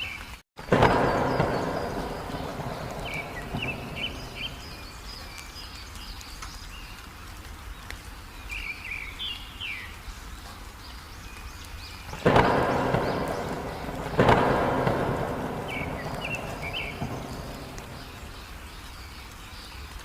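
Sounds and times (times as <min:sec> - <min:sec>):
rain rumbling: 0:00.0 - 0:20.0
songbirds chirping: 0:00.0 - 0:20.0
loud thunder crash: 0:00.6 - 0:05.0, 0:12.2 - 0:18.5.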